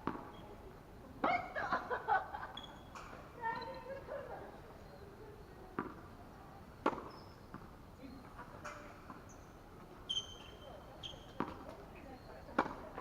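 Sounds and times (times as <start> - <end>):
tennis ball struck by rackets: 0.0 - 0.4, 2.9 - 3.3, 5.7 - 6.1, 6.8 - 7.7, 10.1 - 11.8, 12.5 - 13.0.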